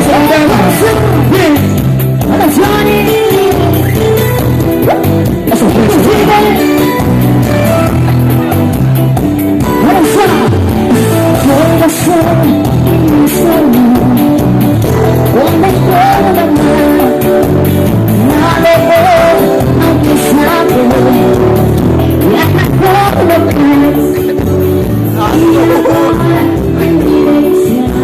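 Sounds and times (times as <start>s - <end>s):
band playing bass and drums: 0.0s - 28.0s
person singing: 0.0s - 28.0s.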